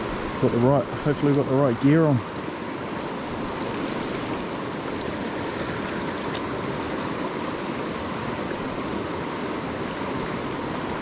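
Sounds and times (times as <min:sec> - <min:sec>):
river water rushing: 0:00.0 - 0:11.0.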